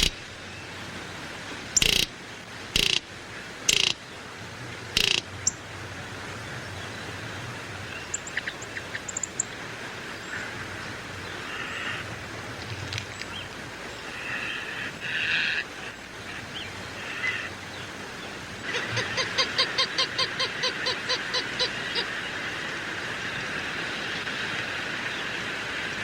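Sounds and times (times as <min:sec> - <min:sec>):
birds calling: 0:00.0 - 0:00.6, 0:01.8 - 0:02.1, 0:02.8 - 0:03.0, 0:05.0 - 0:05.6, 0:07.7 - 0:09.6, 0:10.2 - 0:12.1
steady outdoor hiss: 0:00.0 - 0:26.0.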